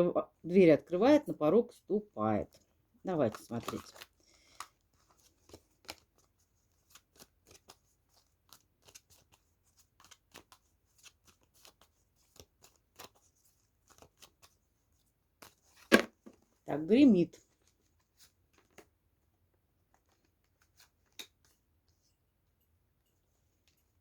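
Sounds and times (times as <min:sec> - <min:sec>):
cards being shuffled: 0:03.1 - 0:14.7, 0:15.3 - 0:16.5, 0:17.5 - 0:19.0, 0:19.8 - 0:21.6.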